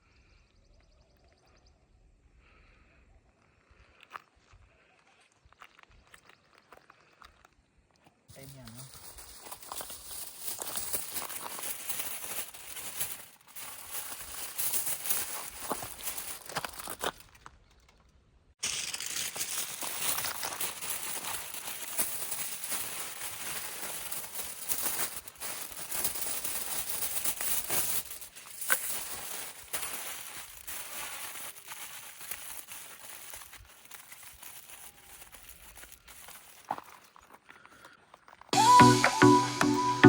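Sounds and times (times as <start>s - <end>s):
aluminium foil crinkling: 8.3s - 38.5s.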